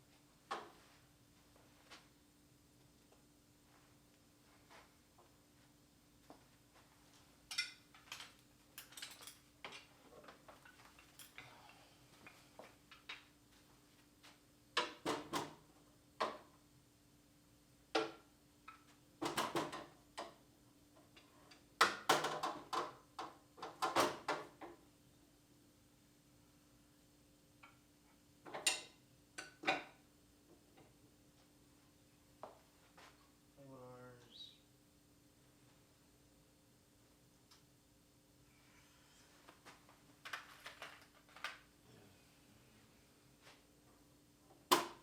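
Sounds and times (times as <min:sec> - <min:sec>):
metal hand tools clinking: 0:07.5 - 0:09.9, 0:11.0 - 0:11.4.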